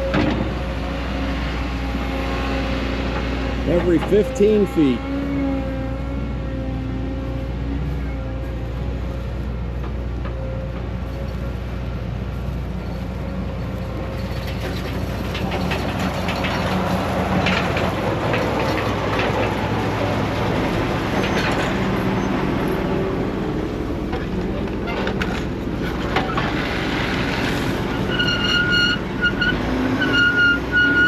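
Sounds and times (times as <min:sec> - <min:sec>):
diesel machinery running: 0:00.0 - 0:31.0
mechanical clatter and rattles: 0:13.8 - 0:19.6.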